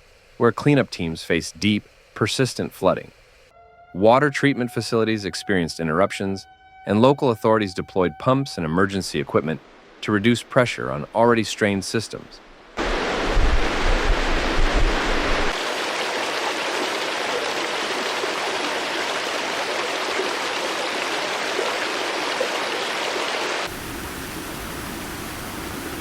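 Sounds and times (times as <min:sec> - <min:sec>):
rushing floodwater: 0:12.8 - 0:26.0.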